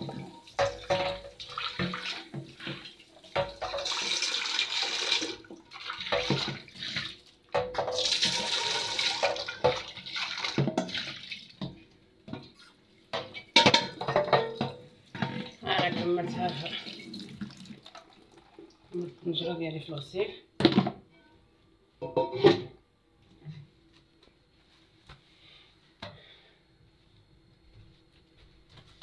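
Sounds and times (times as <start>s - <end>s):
pot knocking and scraping: 0.0s - 4.1s, 13.1s - 16.8s, 22.0s - 22.7s
tap water running into pot: 0.0s - 12.5s, 13.1s - 19.4s.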